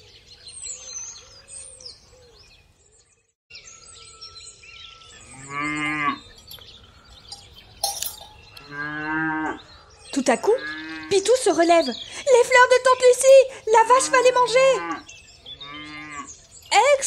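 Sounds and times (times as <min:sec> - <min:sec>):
birds chirping: 0:00.0 - 0:17.0
cow mooing: 0:05.2 - 0:06.3, 0:08.6 - 0:09.7, 0:13.8 - 0:16.4.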